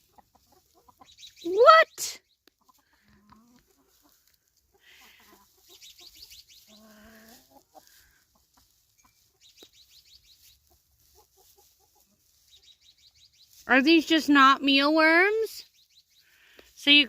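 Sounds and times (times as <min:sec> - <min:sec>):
hens clucking faintly: 0:00.0 - 0:01.3, 0:02.0 - 0:12.8.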